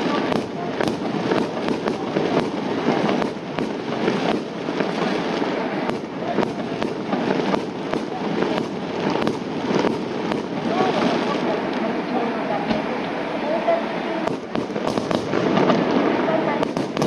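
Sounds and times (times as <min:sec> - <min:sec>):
rumble of explosions: 0:00.0 - 0:11.7, 0:14.2 - 0:17.0
fireworks shells bursting: 0:14.2 - 0:17.0.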